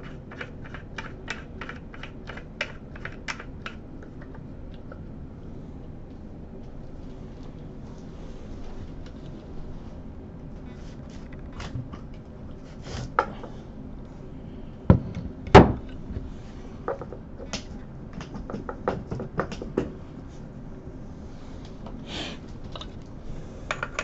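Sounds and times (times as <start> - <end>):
small parts clicking and knocking: 0.0 - 5.0, 23.7 - 24.0
low steady hum: 0.0 - 24.0.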